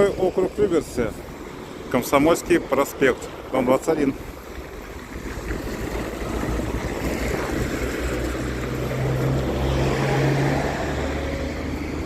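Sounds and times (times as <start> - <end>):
road noise: 0.0 - 12.0
vehicle engine hum: 3.2 - 12.0.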